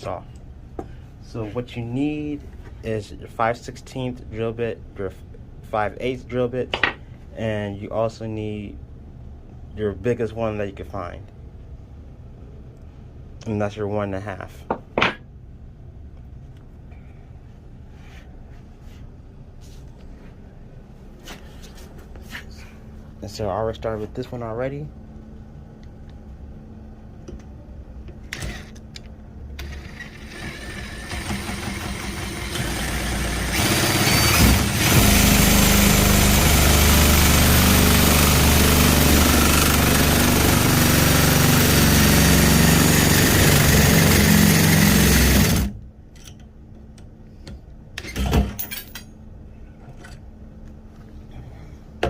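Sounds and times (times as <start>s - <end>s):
power drill boring: 29.6s - 45.7s.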